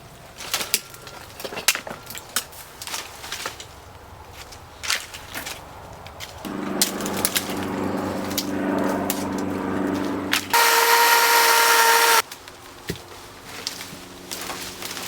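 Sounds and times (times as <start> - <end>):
power saw cutting branches: 6.5 - 12.8.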